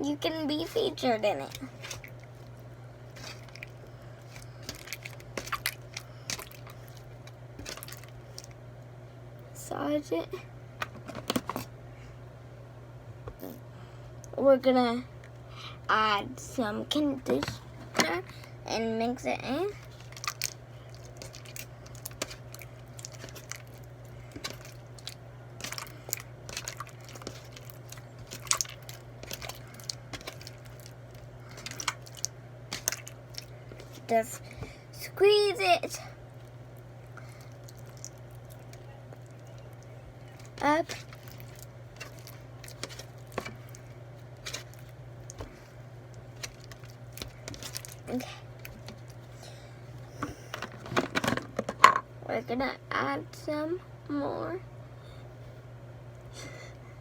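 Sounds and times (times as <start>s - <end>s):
steady low hum: 0.0s - 57.0s
hands squeezing sticky slime: 3.1s - 8.5s, 19.8s - 34.4s
slime clicking and crackling: 19.9s - 34.2s, 37.2s - 49.2s.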